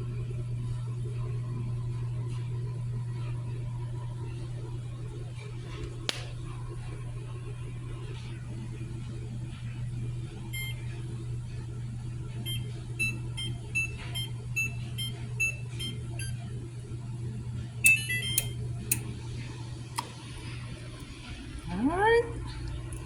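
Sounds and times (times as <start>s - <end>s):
steady low hum: 0.0s - 23.0s
appliance control panel beeps: 10.5s - 11.0s, 12.4s - 16.5s, 17.8s - 19.1s.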